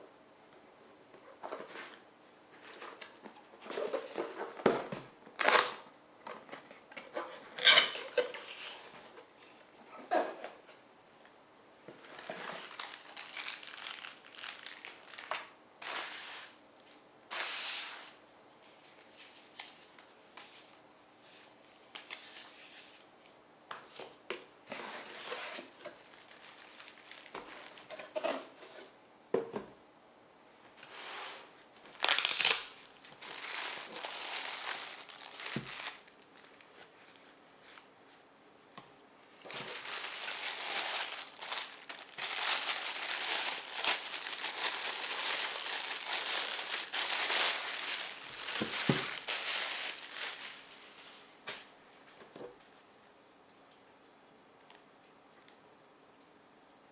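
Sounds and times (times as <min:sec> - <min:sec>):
packaging crinkling: 0:12.0 - 0:16.0, 0:25.6 - 0:28.0, 0:31.9 - 0:37.9, 0:39.4 - 0:51.4.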